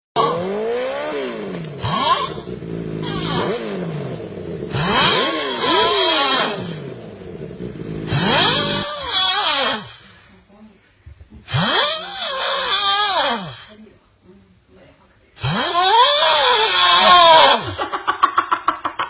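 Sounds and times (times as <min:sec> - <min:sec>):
person snoring: 0:15.6 - 0:17.8.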